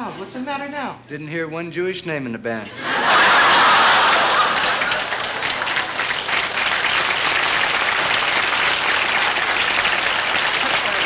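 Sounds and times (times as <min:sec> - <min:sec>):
audience applauding: 0:03.3 - 0:11.0.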